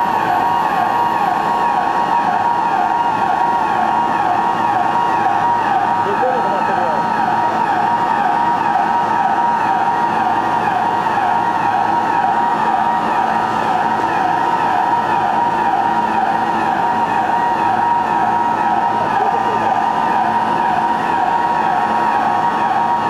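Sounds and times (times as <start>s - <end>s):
warbling electronic alarm: 0.0s - 23.0s.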